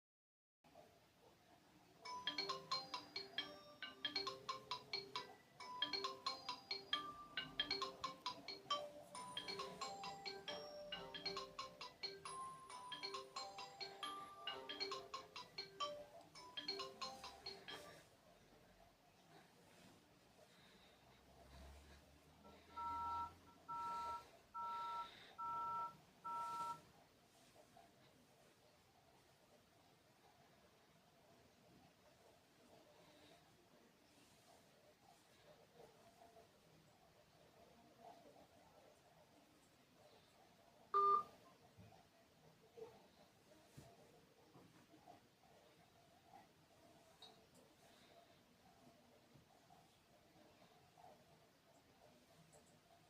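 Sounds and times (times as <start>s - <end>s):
smartphone ringtone melody: 2.0s - 18.0s, 22.5s - 26.8s, 41.0s - 41.3s
phone two-tone beeps: 22.8s - 26.8s, 41.0s - 41.3s.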